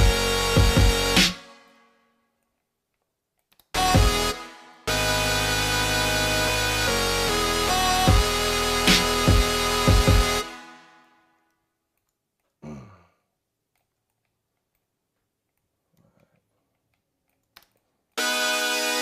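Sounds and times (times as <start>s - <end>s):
dubstep loop: 0.0s - 1.5s, 3.8s - 10.8s, 18.2s - 19.0s.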